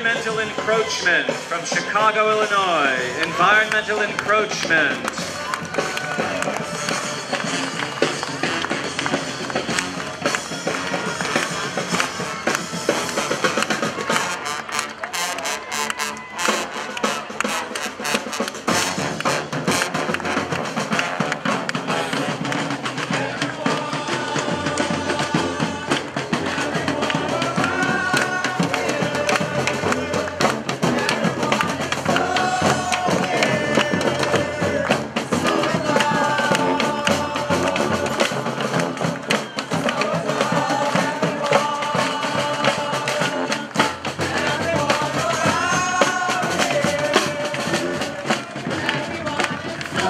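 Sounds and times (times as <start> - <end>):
drums and hand percussion: 0.0 - 50.0
horns playing melody: 0.0 - 50.0.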